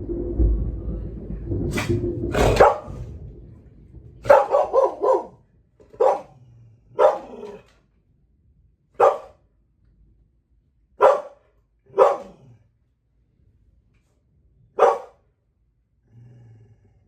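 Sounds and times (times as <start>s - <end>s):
low rumble: 0.0s - 17.0s
dog barking: 2.4s - 3.0s, 4.3s - 7.6s, 9.0s - 9.4s, 11.0s - 12.6s, 14.8s - 15.2s.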